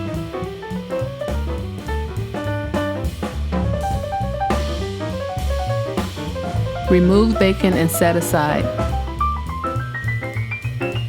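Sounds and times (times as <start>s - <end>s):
music with drums and bass: 0.0s - 11.0s.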